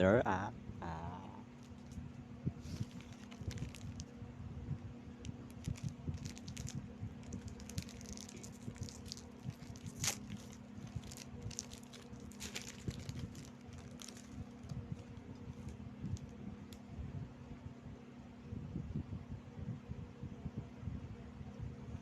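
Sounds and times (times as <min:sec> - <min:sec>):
steady low hum: 0:00.0 - 0:22.0
crunchy chewing of crackers: 0:01.5 - 0:02.0, 0:02.6 - 0:04.1, 0:05.4 - 0:16.4
plastic wrapper crinkling: 0:01.6 - 0:02.0, 0:02.6 - 0:04.1, 0:05.2 - 0:16.4.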